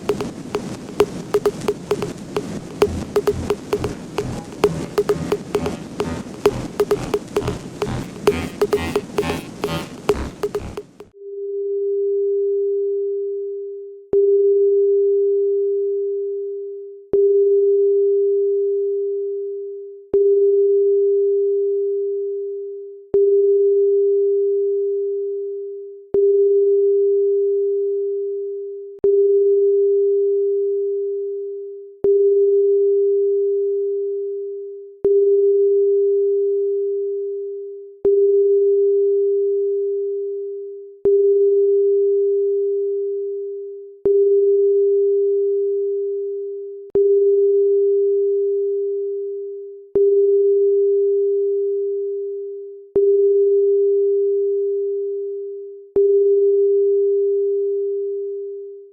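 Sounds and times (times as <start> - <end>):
electronic pure tone: 0.0 - 11.1.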